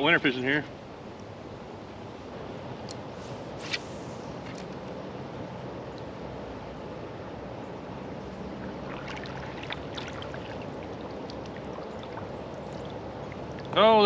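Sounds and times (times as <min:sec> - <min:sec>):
creek water flowing: 0:00.7 - 0:14.0
light ticks and drips: 0:05.9 - 0:06.1, 0:09.0 - 0:13.8.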